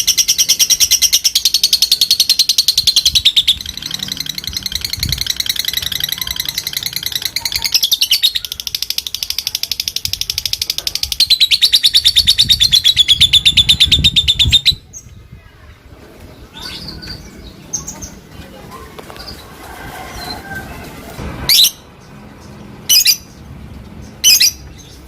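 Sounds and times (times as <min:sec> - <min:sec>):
lovebird rapid chattering call: 0:00.0 - 0:14.9, 0:24.1 - 0:25.0.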